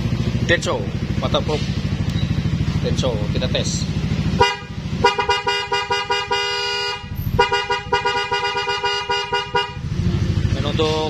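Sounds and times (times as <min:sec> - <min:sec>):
electric horn honking: 0:04.4 - 0:10.0.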